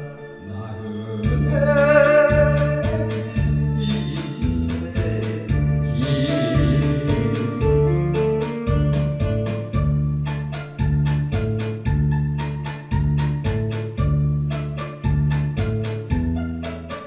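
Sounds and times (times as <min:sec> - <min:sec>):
person singing with vibrato: 0:00.0 - 0:08.5
pop backing music with beat: 0:00.0 - 0:17.0.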